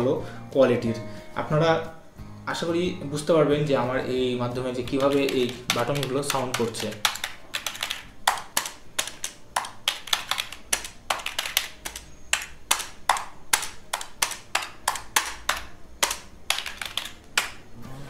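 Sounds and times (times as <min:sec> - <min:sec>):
keyboard keys clicking: 0:04.9 - 0:17.6.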